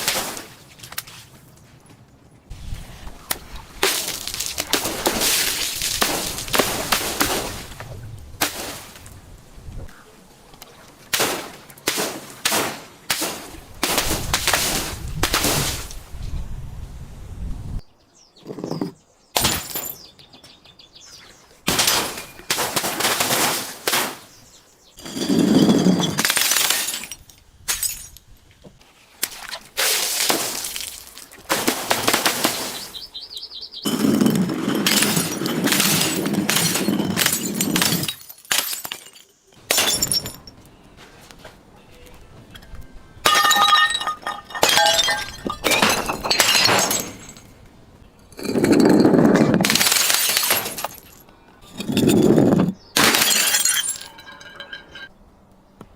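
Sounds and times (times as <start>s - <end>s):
glass bottles breaking: 3.8s - 7.7s, 19.4s - 20.1s, 21.7s - 24.2s, 25.0s - 28.2s, 29.8s - 32.9s, 33.8s - 40.6s, 43.2s - 47.6s, 48.3s - 55.1s
glass ringing: 43.3s - 47.4s, 51.7s - 55.1s.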